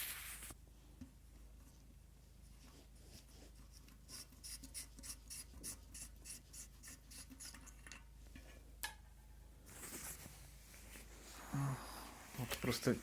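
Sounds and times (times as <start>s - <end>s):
faint scratchy rubbing: 9.7s - 13.0s.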